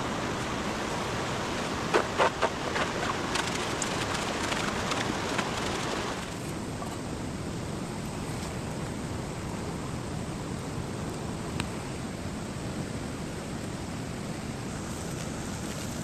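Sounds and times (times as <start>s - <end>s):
mountain stream rushing: 0.0s - 16.0s.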